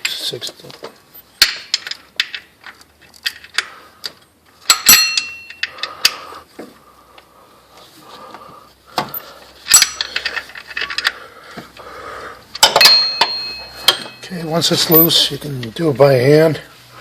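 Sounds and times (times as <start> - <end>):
metal hand tools clinking: 4.6 - 6.2, 9.6 - 11.2, 12.6 - 15.3
sharp metallic knocks: 12.6 - 14.5.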